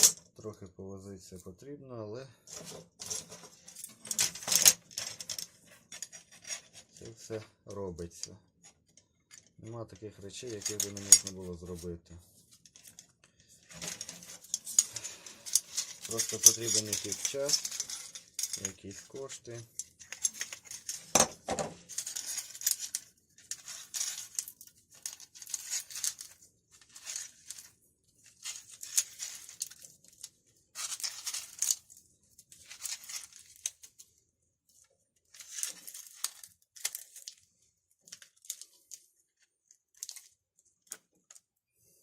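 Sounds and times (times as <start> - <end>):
spring scraping and rustling: 2.5 - 7.4, 10.3 - 11.8, 12.6 - 34.0.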